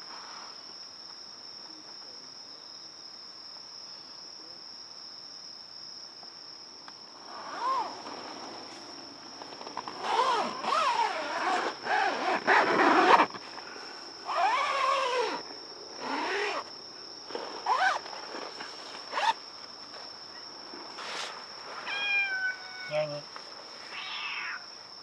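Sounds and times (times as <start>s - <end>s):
crickets chirring: 0.0s - 25.0s
cat meowing: 21.8s - 23.1s, 23.9s - 24.7s.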